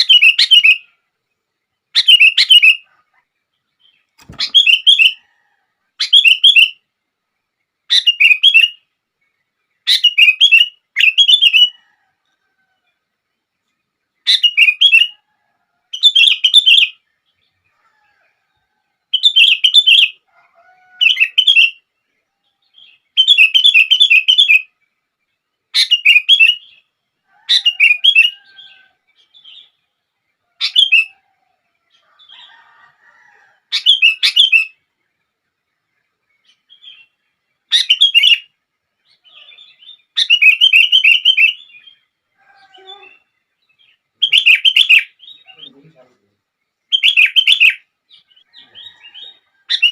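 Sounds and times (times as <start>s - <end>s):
bulbul chirpy song: 36.4s - 49.9s.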